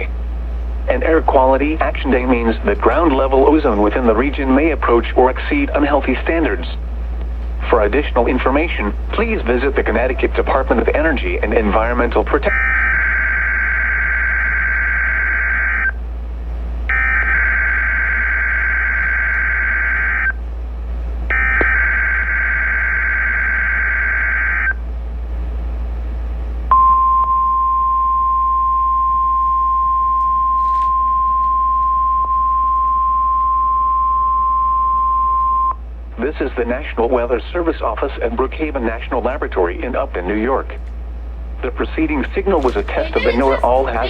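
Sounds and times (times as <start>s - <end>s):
steady warning alarm tone: 7.6s - 16.1s, 16.9s - 20.4s, 21.3s - 24.8s, 26.7s - 40.7s.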